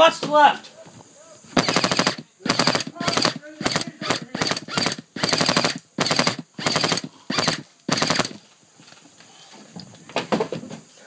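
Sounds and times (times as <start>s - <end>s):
airsoft guns firing bursts: 1.6s - 8.4s.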